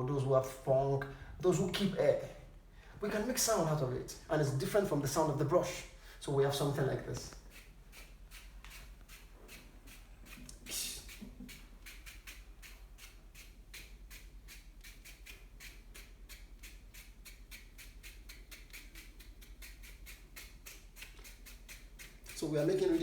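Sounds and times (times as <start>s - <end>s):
comb scraping through hair: 6.6s - 23.0s.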